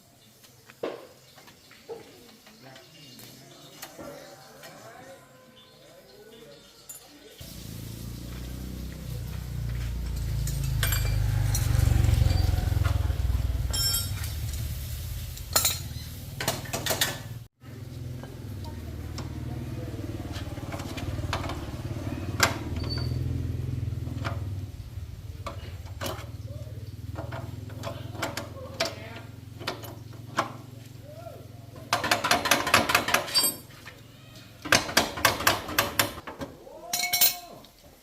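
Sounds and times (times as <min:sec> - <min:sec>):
metal tools clinking and knocking: 0:06.8 - 0:07.3, 0:10.0 - 0:11.8, 0:13.7 - 0:14.6, 0:15.4 - 0:17.2, 0:31.9 - 0:33.9, 0:36.9 - 0:37.7.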